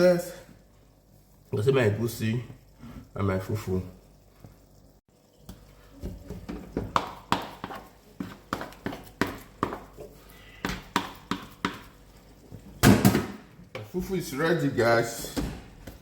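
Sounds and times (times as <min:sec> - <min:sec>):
spoon knocking in pot of dough: 0:06.2 - 0:12.0.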